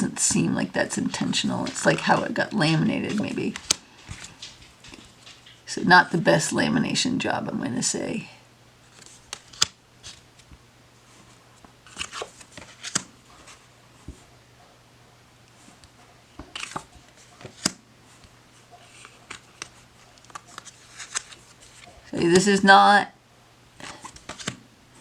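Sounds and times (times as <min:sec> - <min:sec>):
cards tapping and sliding: 0:03.0 - 0:05.6, 0:08.9 - 0:10.6, 0:11.6 - 0:14.2, 0:15.8 - 0:22.6, 0:23.8 - 0:24.6.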